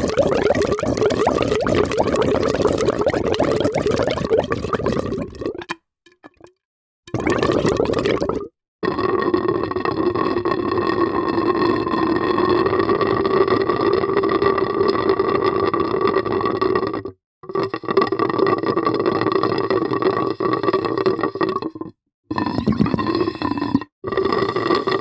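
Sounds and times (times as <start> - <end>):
water gurgling and bubbling: 0.0 - 6.5, 7.1 - 8.5, 21.4 - 23.8.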